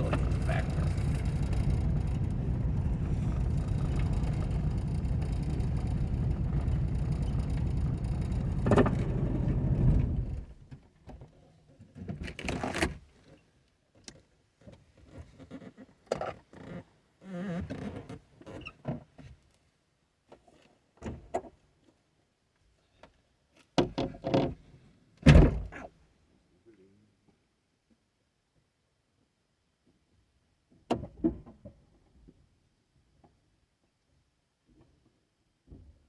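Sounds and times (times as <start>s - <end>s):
car engine and road rumble: 0.0s - 10.6s.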